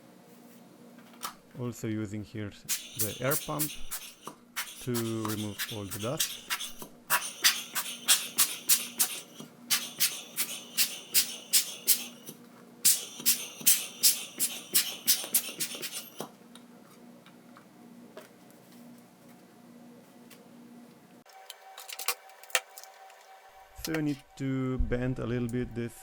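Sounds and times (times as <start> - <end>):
air pump hissing puffs: 2.7 - 16.3.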